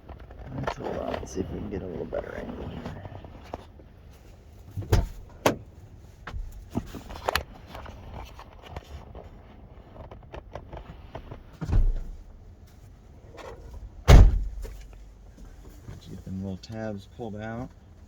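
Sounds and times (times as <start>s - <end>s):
heavy thump: 4.8s - 5.6s, 11.6s - 12.2s, 14.1s - 15.0s.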